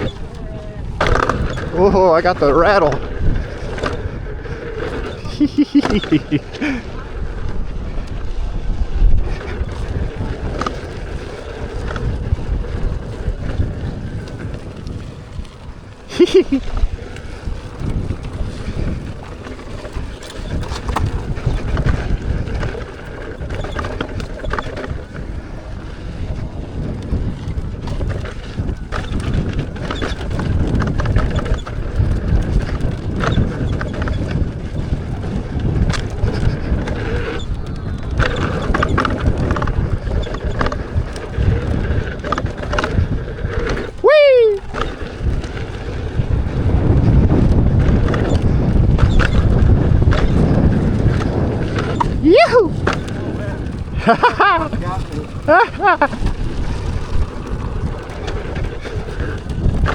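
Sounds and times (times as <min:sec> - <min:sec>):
low tyre rumble: 0:00.0 - 0:59.9
wind buffeting microphone: 0:00.0 - 0:59.9
knocks and rattles over bumps: 0:26.4 - 0:44.0, 0:44.6 - 0:59.9.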